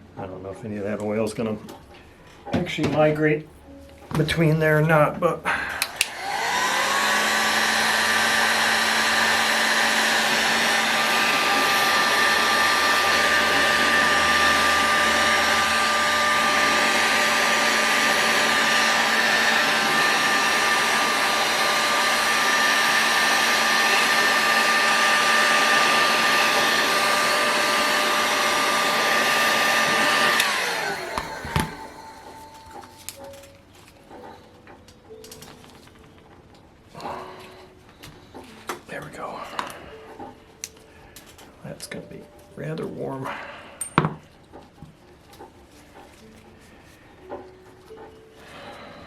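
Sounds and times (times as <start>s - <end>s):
heat gun fan whirring: 0.0s - 49.0s.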